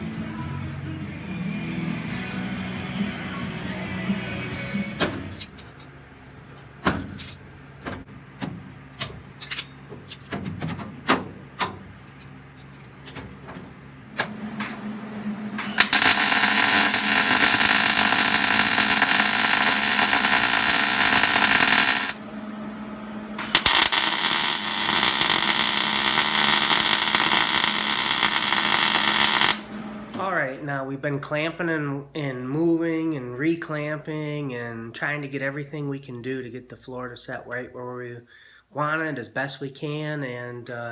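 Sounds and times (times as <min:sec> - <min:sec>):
welding crackling hiss: 0:15.6 - 0:22.2, 0:23.4 - 0:29.7.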